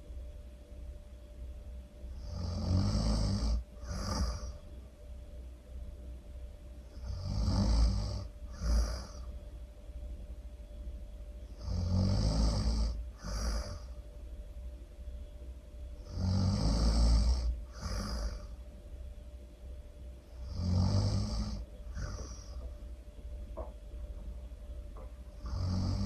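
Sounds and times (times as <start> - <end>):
person snoring loudly: 2.2 - 4.6, 6.9 - 9.3, 11.6 - 14.0, 16.0 - 18.6, 20.4 - 22.6, 25.4 - 26.0.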